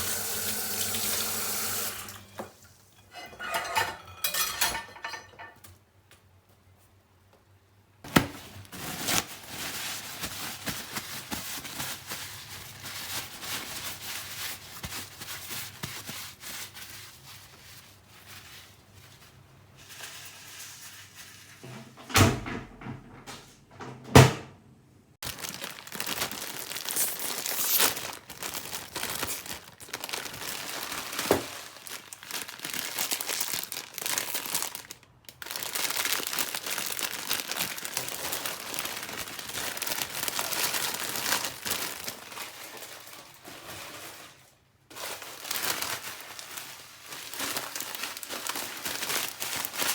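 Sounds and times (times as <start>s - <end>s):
food wrapping crinkling: 8.1s - 21.6s, 25.2s - 49.9s
tissue paper rustling: 8.1s - 21.6s, 25.2s - 49.9s.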